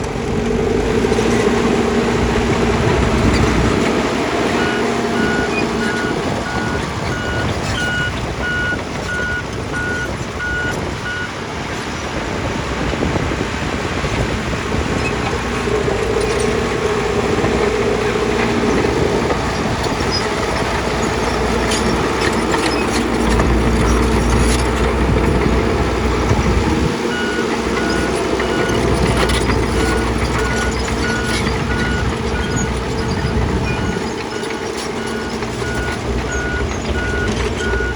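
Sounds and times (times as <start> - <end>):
heavy machinery diesel engine: 0.0 - 37.9
backup alarm beeping: 4.6 - 11.3.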